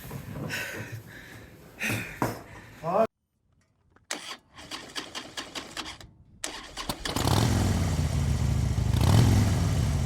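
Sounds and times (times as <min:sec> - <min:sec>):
motorcycle engine rumbling: 0:06.6 - 0:10.0.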